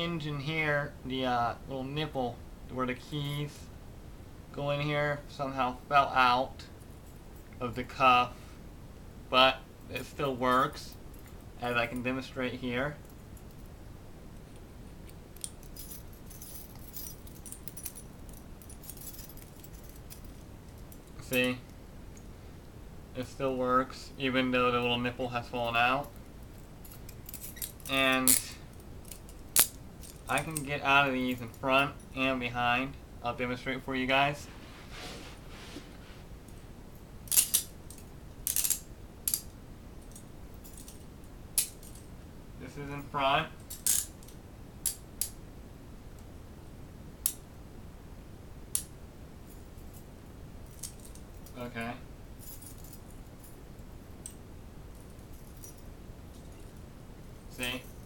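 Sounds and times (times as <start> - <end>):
handcuff metallic clicks and jingles: 15.1 - 21.1, 26.2 - 30.7, 37.3 - 41.0.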